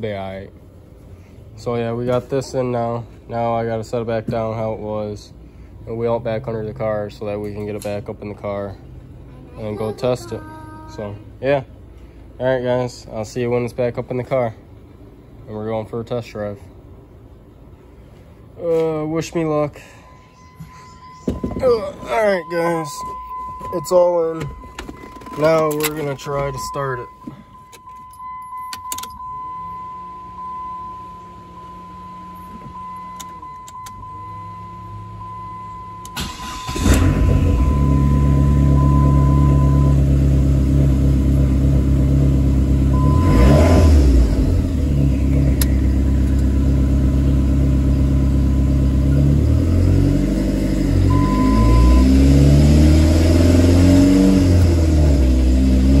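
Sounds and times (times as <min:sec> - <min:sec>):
steady chime tone: 0:19.8 - 0:32.6
car engine starting and revving: 0:33.1 - 0:56.0.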